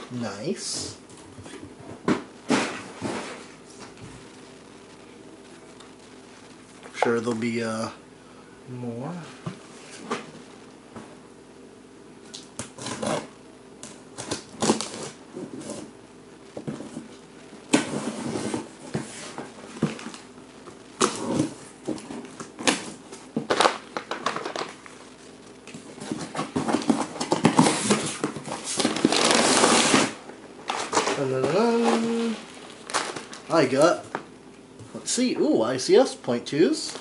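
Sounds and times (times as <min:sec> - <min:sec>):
packaging rustling and crinkling: 0:16.5 - 0:34.3.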